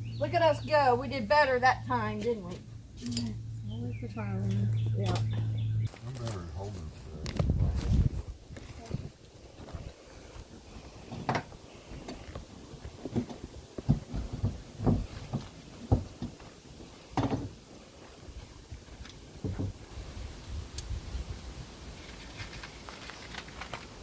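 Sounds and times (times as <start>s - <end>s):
wooden knocks and thumps: 11.1s - 12.2s, 12.8s - 16.5s, 17.1s - 17.6s, 19.4s - 19.8s.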